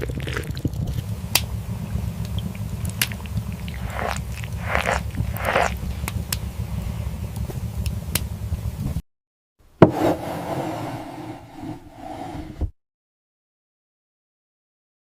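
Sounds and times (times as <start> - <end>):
low rumble: 0.0 - 9.0.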